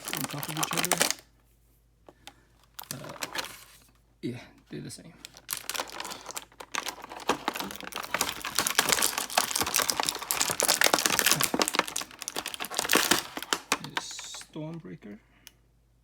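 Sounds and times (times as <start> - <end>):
plastic packaging crinkling: 0.0 - 1.3, 2.2 - 4.0, 5.2 - 14.6.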